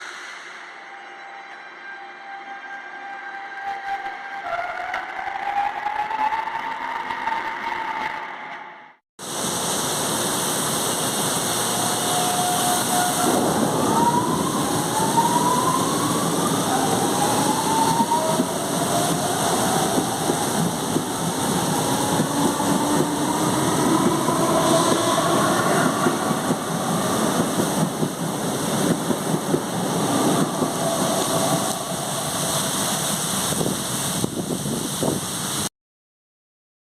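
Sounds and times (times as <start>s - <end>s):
rail running noise: 0.0s - 8.2s, 9.2s - 35.7s.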